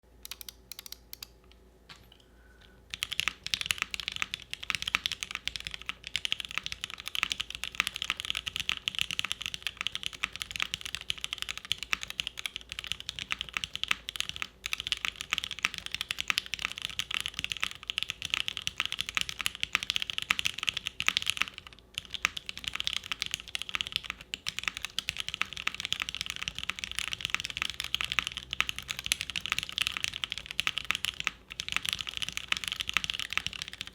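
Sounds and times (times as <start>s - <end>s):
mechanical keyboard typing: 0.2s - 1.3s, 2.9s - 33.9s.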